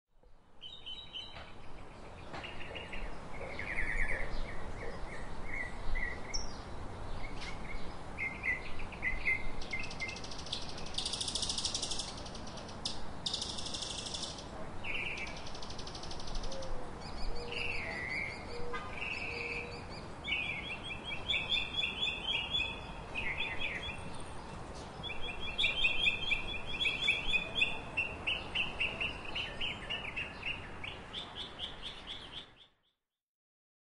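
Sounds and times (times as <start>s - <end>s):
low background noise: 0.2s - 32.8s
birds chirping and trilling: 0.6s - 32.9s
high buzzy bird trills: 9.2s - 14.5s.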